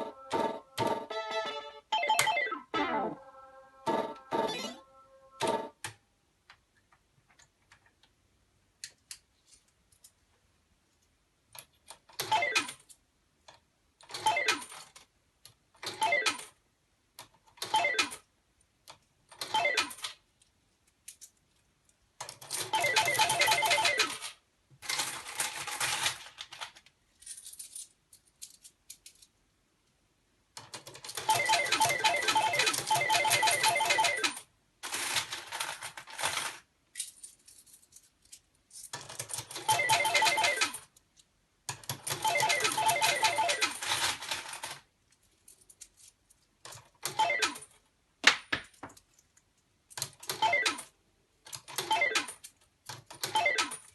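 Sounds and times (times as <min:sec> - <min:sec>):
tokens clinking into slot tray: 0:22.4 - 0:26.2, 0:30.9 - 0:38.1, 0:38.7 - 0:40.9, 0:42.0 - 0:44.8.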